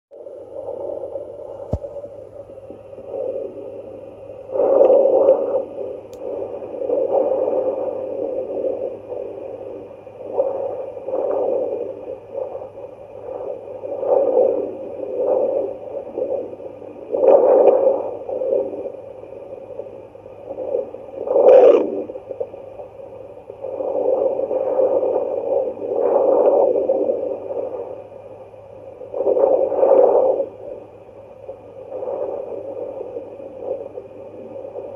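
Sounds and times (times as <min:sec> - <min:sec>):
faint electronic tone and hum: 0:00.1 - 0:34.9
doppler whooshing heartbeat: 0:01.6 - 0:02.1.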